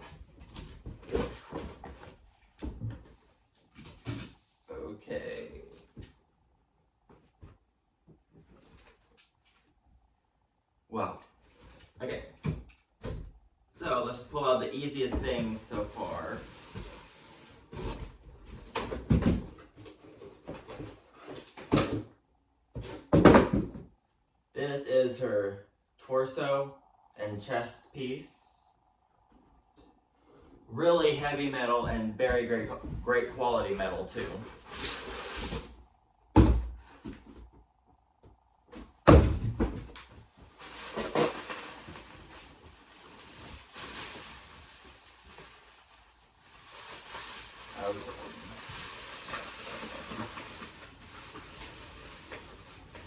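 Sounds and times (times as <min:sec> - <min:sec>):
cardboard and packing rustling: 0:00.0 - 0:04.6, 0:15.1 - 0:23.9, 0:32.2 - 0:35.8, 0:38.7 - 0:53.0
packaging rustling and shuffling: 0:39.5 - 0:53.0.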